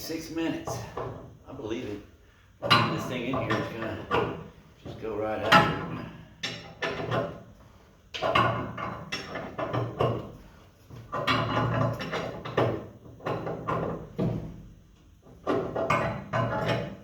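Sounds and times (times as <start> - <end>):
wrench clanking and scraping on metal: 2.6 - 7.5, 8.2 - 14.1, 15.4 - 17.0.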